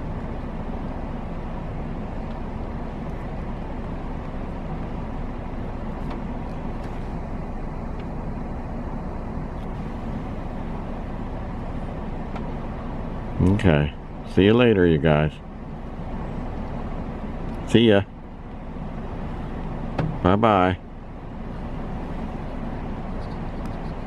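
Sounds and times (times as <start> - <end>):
low engine rumble: 0.0 - 24.0.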